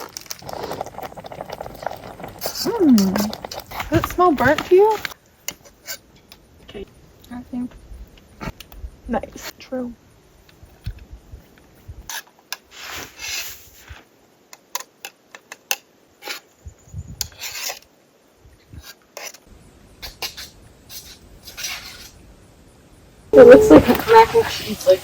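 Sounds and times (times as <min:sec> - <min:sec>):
utensil scraping a cooking pot: 0:00.0 - 0:06.1, 0:17.2 - 0:17.9, 0:18.8 - 0:22.2.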